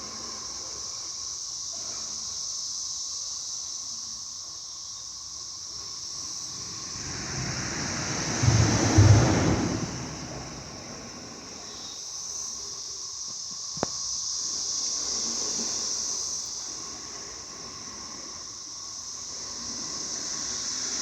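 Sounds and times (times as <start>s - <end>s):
cicadas droning: 0.0s - 21.0s
rush of noise: 6.4s - 11.6s.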